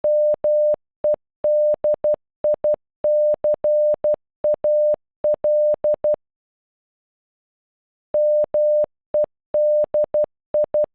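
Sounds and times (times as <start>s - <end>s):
morse code beeps: 0.0s - 0.8s, 1.5s - 6.2s.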